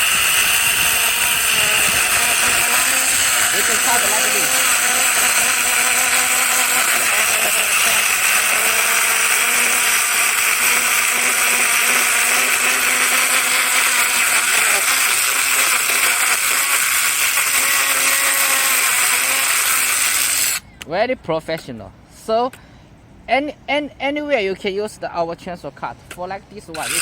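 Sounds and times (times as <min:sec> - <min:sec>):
electric chainsaw cutting branch: 0:00.0 - 0:20.6, 0:26.7 - 0:27.0.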